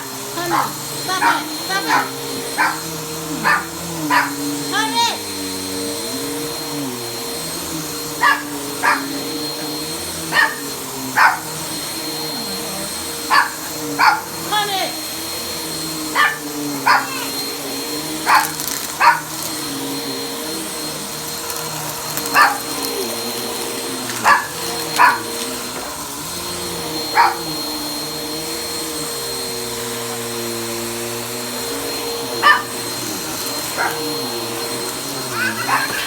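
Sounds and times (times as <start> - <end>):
vacuum cleaner on carpet: 0.0 - 36.0
dog barking: 0.4 - 4.4, 8.2 - 11.6, 13.3 - 14.4, 16.1 - 17.4, 18.2 - 19.4, 22.3 - 22.9, 24.2 - 25.5, 27.1 - 27.6, 32.4 - 32.8, 33.7 - 34.1, 35.3 - 36.0.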